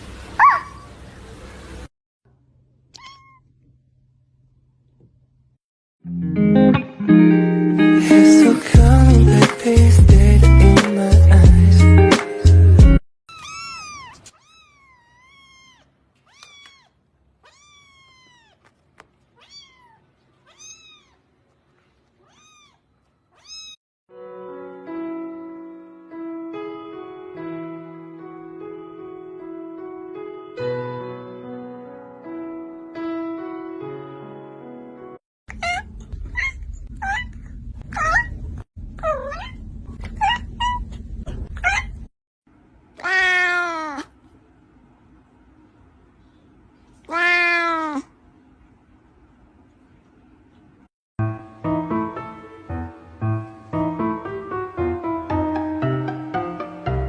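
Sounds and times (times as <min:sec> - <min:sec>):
kitten meowing: 0:03.0 - 0:03.5, 0:13.3 - 0:18.6, 0:19.4 - 0:21.2, 0:22.2 - 0:22.8, 0:23.4 - 0:23.8, 0:43.0 - 0:44.1, 0:47.1 - 0:48.1
music: 0:06.0 - 0:13.0, 0:24.1 - 0:35.2, 0:51.2 - 0:57.0.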